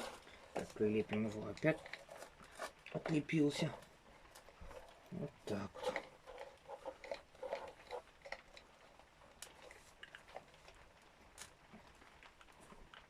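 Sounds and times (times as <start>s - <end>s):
hands rustling: 0.0s - 3.2s.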